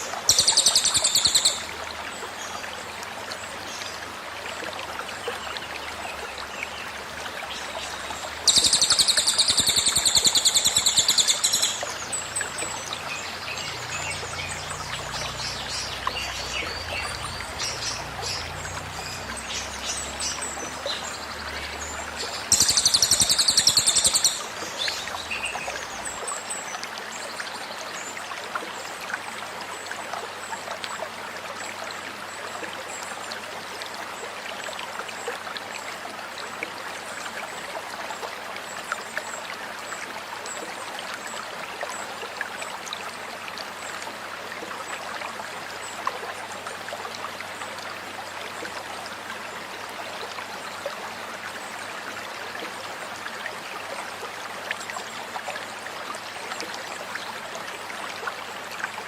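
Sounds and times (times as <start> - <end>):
flowing stream: 0.0 - 59.0
bird singing rapid high song: 0.3 - 1.7, 8.5 - 25.8.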